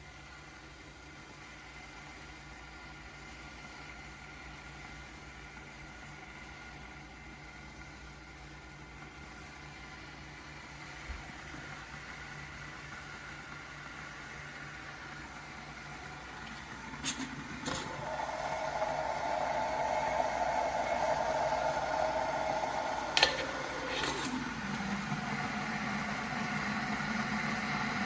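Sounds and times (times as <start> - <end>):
kettle hum: 0.0 - 28.0
kettle switch clicks: 23.1 - 24.9.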